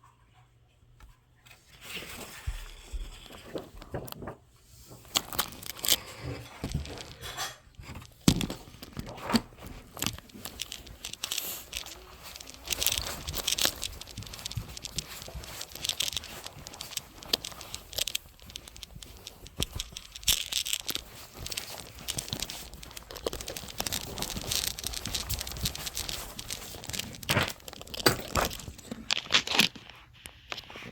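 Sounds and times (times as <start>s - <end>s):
dry paper rustling: 7.8s - 30.9s.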